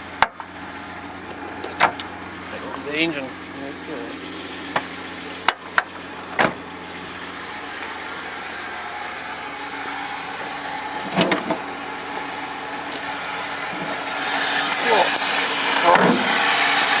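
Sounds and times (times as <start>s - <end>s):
car engine idling: 0.0s - 17.0s
handling noise rattle: 1.6s - 16.3s.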